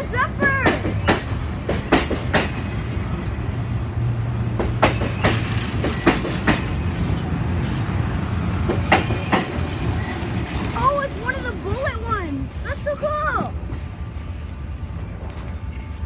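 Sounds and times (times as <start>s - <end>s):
low train rumble: 0.0s - 16.0s
train wheels clacking over rail joints: 0.2s - 2.8s, 4.5s - 7.2s, 8.5s - 11.6s.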